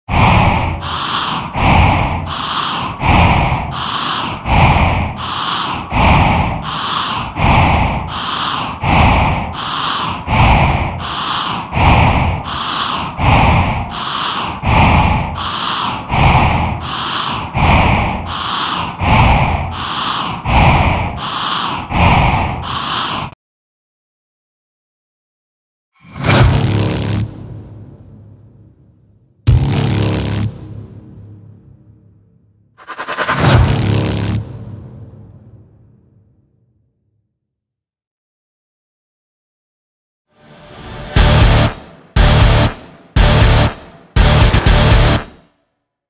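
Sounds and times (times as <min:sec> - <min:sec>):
rhythmic low hit with hiss: 0:41.2 - 0:45.3.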